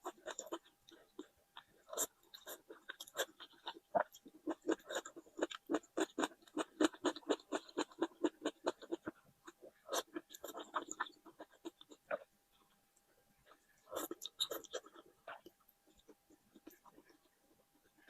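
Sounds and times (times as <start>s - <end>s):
chewing food: 0.0s - 18.0s.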